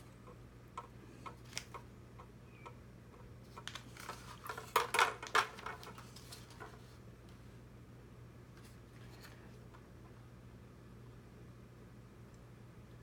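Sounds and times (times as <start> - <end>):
plastic parts clicking and tapping: 3.6 - 6.8.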